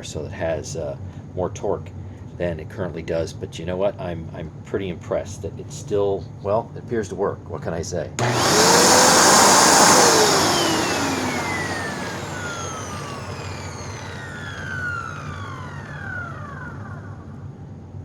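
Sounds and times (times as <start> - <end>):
vacuum cleaner motor spinning down: 8.2 - 17.5.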